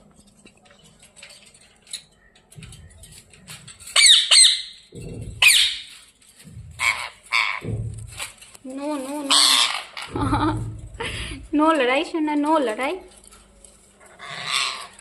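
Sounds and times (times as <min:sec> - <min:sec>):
parakeet screeching: 0:03.9 - 0:05.9, 0:06.8 - 0:07.6, 0:09.2 - 0:10.1, 0:14.2 - 0:15.0.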